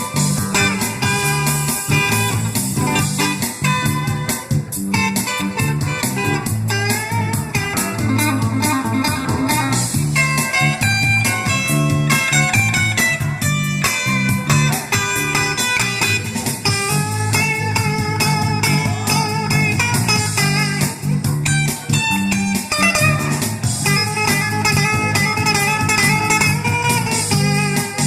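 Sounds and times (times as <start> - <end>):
repeating bass line: 0.0 - 28.0.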